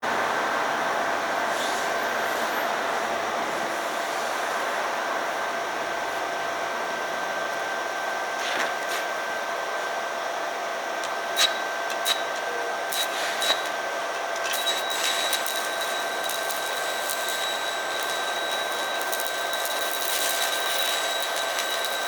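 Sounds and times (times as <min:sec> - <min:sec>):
welding arc pops and crackles: 0:11.0 - 0:22.0
welding arc hissing: 0:11.4 - 0:22.0.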